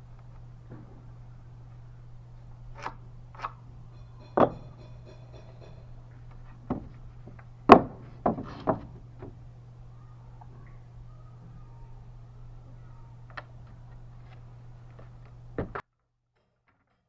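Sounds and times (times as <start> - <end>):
knocks of wood and tools: 2.8 - 9.4, 15.0 - 15.8.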